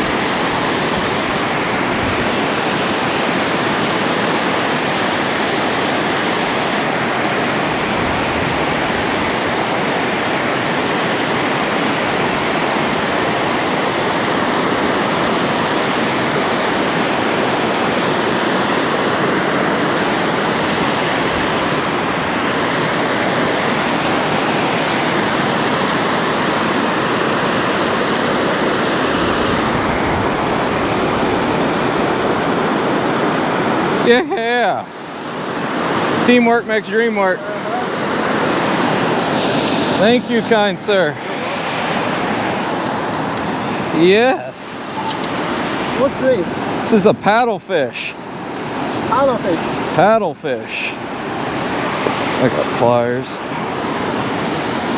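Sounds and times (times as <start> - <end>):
water rushing over dam spillway: 0.0 - 54.9.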